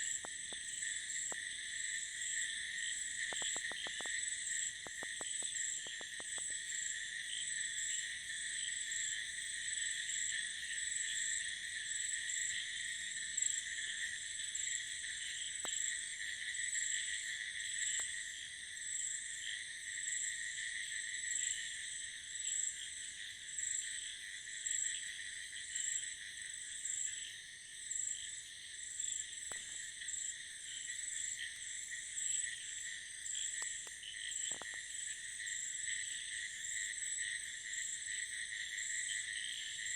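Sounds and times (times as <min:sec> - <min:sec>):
high pulsing insect trill: 0:00.0 - 0:09.2
frogs and crickets calling: 0:00.0 - 0:39.9.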